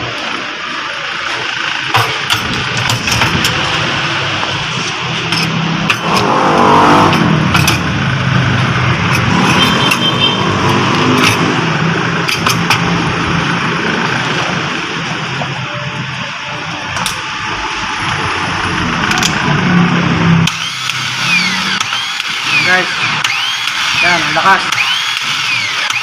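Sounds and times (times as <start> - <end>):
starter motor whirring: 17.9 - 26.0
sharp clicks: 20.4 - 26.0.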